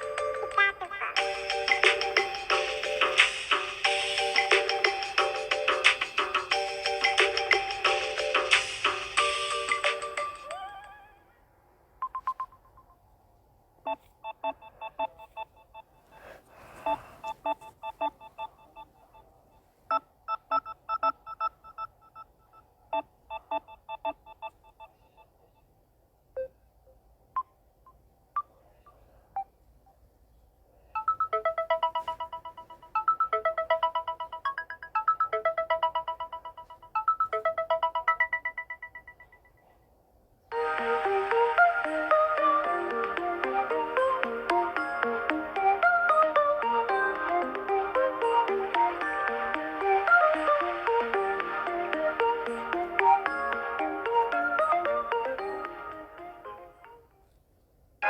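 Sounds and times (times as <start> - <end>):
trilling ringtone: 0.0 - 11.2, 31.0 - 39.8, 40.5 - 57.0.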